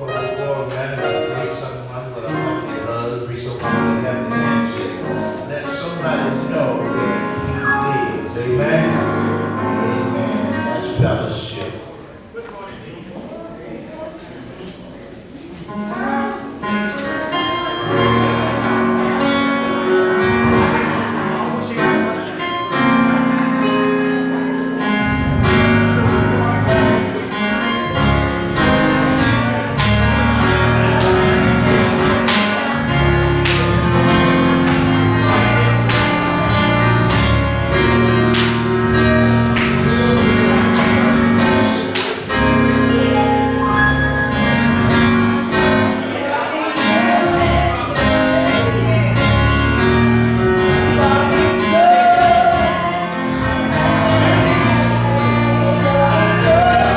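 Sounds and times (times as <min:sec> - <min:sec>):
keyboard chords: 0:00.0 - 0:12.3, 0:15.6 - 0:56.9
bass line: 0:25.1 - 0:45.8.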